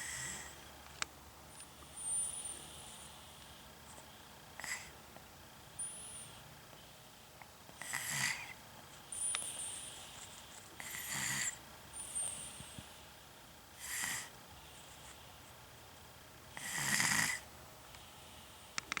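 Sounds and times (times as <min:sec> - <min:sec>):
high whistling breaths: 0:09.1 - 0:10.4, 0:12.0 - 0:13.2.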